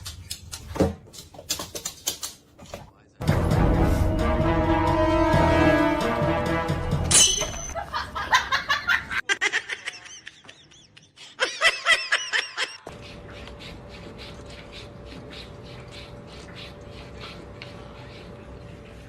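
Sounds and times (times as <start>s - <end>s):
person laughing: 7.6s - 12.9s.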